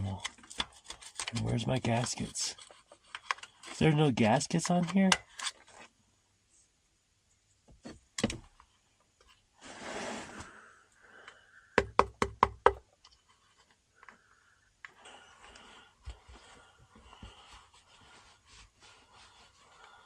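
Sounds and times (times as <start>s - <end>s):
scraping rustle: 9.6s - 10.7s.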